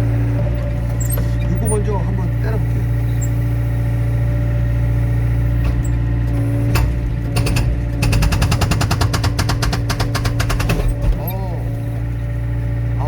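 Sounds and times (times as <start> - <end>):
excavator engine running: 0.0 - 13.0
hydraulic breaker hammering log: 5.4 - 12.1.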